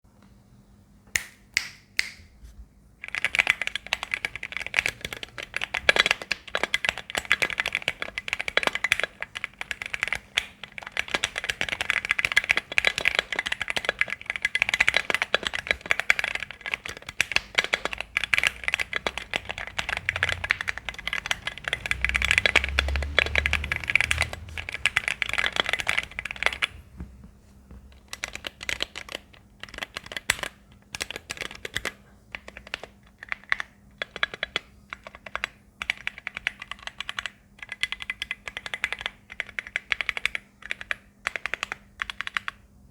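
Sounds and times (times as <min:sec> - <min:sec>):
mechanical keyboard typing: 0:03.0 - 0:26.9, 0:27.8 - 0:42.6
deeper keyboard thumps: 0:26.3 - 0:28.0.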